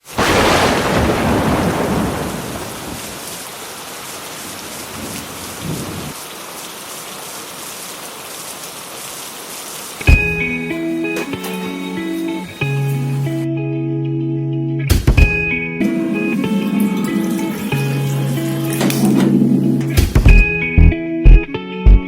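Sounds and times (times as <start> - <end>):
heavy rain: 0.0 - 13.4, 15.2 - 20.6
loud thunder rumble: 0.1 - 3.3
guitar music: 10.1 - 22.0.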